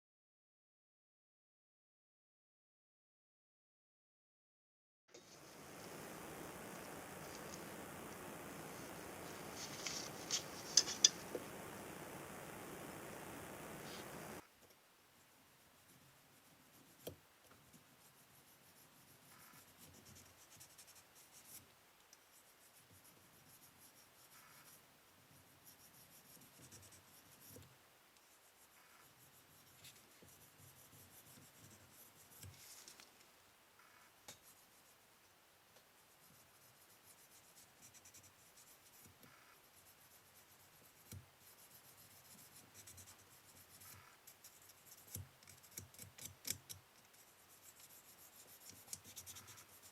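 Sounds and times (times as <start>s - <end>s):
sandpaper scratching metal: 5.3s - 14.4s.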